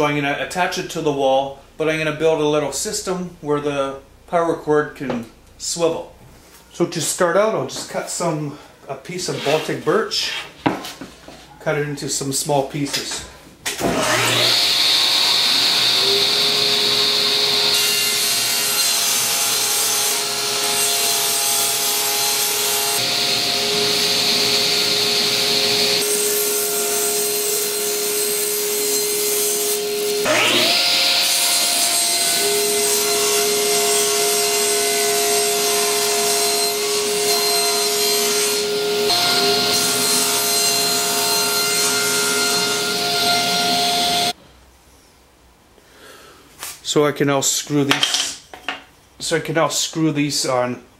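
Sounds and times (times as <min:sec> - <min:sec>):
electric saw motor whining: 0:13.9 - 0:19.2, 0:21.7 - 0:27.3, 0:29.6 - 0:32.8, 0:37.9 - 0:44.4.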